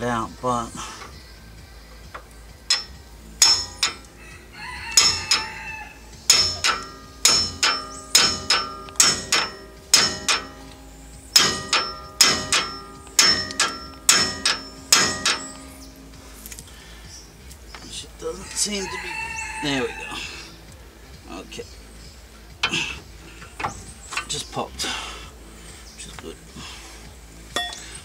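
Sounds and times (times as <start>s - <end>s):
hammer blows ringing on steel: 2.7s - 4.1s, 4.9s - 16.2s.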